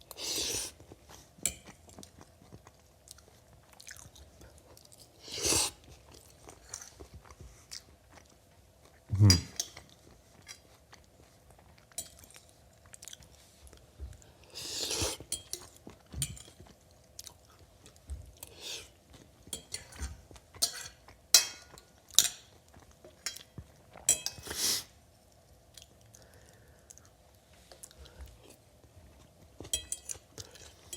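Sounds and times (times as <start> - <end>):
person chewing: 0.0 - 19.3.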